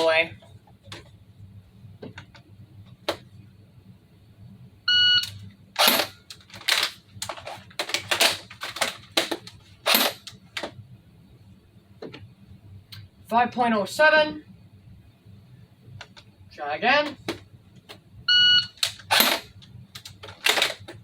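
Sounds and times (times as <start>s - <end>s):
plastic clicks and clacks: 6.3s - 10.8s, 20.0s - 21.0s.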